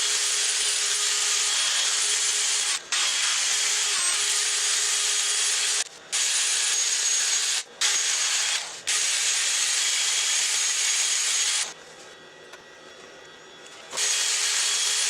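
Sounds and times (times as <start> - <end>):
wood lathe tool cutting hiss: 0.0 - 11.8.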